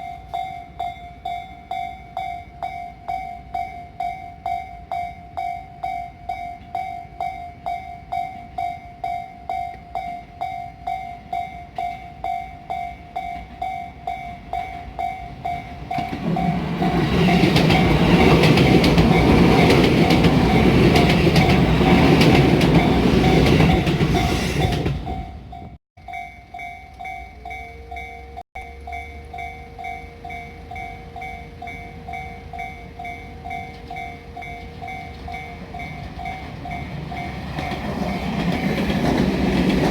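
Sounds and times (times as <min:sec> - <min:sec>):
electric train passing: 0:00.0 - 0:39.9
level-crossing warning bell: 0:00.0 - 0:39.9
wheels clicking over rail joints: 0:14.6 - 0:27.2, 0:28.8 - 0:39.9.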